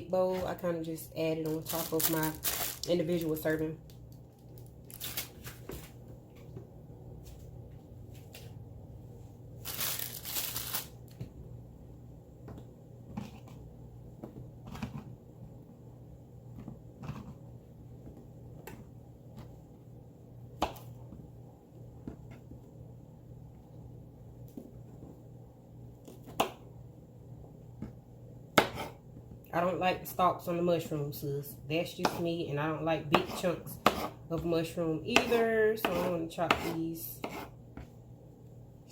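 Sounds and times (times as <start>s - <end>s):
plastic packaging rustling: 1.4s - 3.5s, 4.3s - 6.0s, 9.6s - 11.1s.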